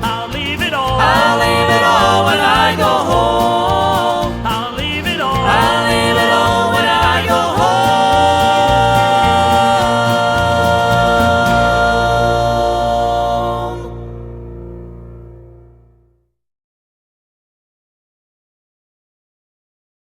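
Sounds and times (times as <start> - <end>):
vocal group singing: 0.0 - 14.4.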